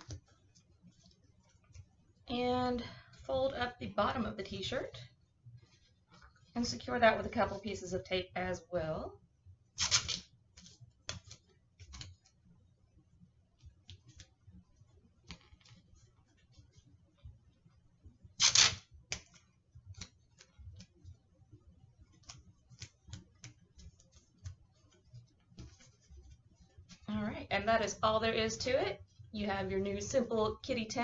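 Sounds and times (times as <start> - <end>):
masking tape ripping off roll: 9.8 - 10.3, 18.4 - 18.8.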